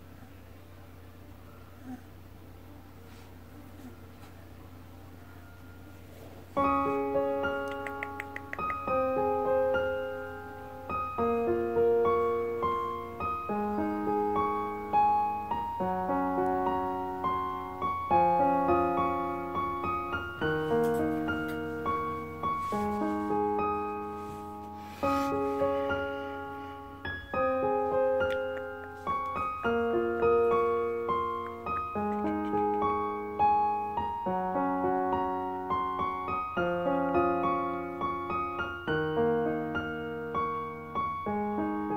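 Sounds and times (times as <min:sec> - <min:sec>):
solo piano music: 0:03.9 - 0:41.9.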